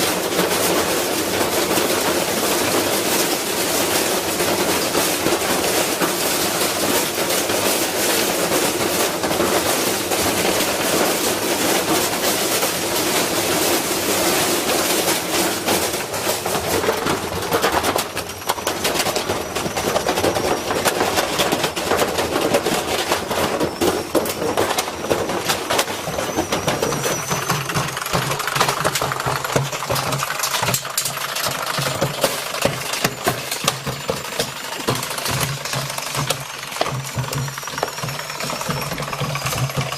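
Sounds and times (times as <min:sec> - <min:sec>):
brick banging in washing machine: 0:04.3 - 0:39.9
motor hum: 0:24.4 - 0:39.9.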